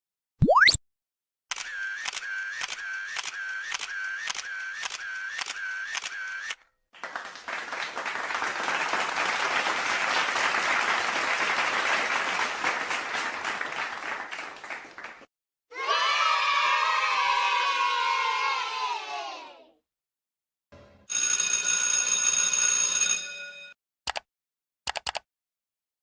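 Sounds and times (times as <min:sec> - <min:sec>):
camera shutter clicking: 0:01.5 - 0:06.6
applause: 0:06.9 - 0:15.3.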